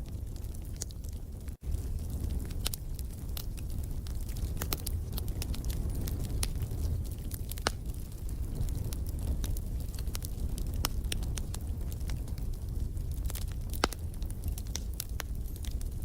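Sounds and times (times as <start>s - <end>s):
low rumble of flames: 0.0s - 16.0s
wood fire crackling and popping: 0.0s - 16.0s.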